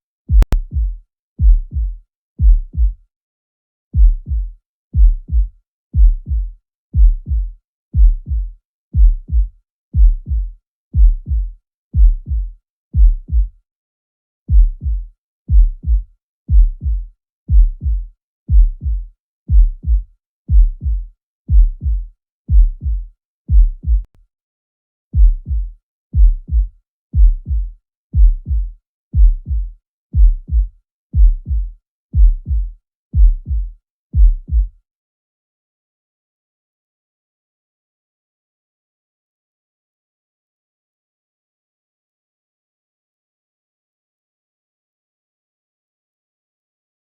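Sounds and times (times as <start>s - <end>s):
heartbeat through stethoscope: 0.3s - 3.0s, 4.0s - 13.6s, 14.5s - 24.1s, 25.1s - 34.8s.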